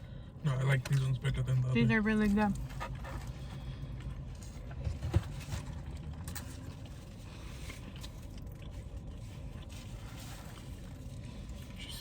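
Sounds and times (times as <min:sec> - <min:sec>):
low background rumble: 0:00.0 - 0:12.0
faint chewing: 0:05.5 - 0:12.0.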